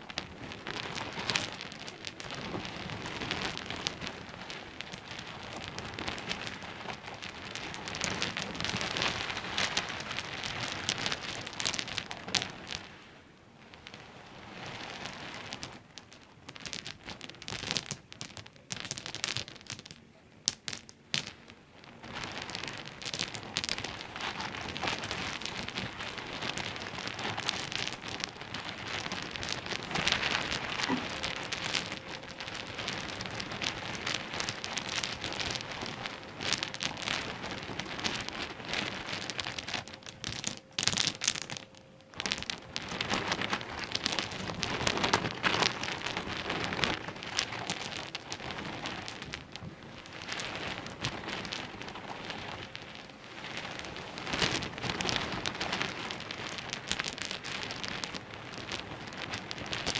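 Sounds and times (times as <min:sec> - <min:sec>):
pebbles clicking and rattling: 0:00.0 - 0:13.0, 0:13.7 - 0:59.9.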